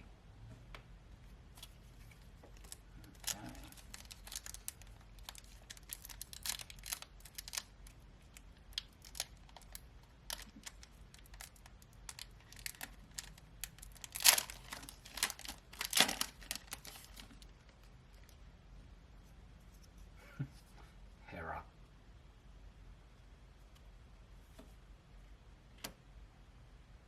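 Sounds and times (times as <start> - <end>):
foil wrapper crinkling: 1.6 - 18.3.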